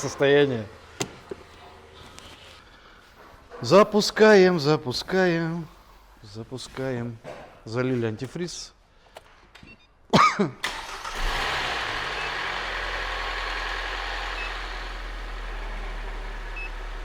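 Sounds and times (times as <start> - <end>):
car engine starting and idling: 0.0 - 2.2, 10.6 - 17.0.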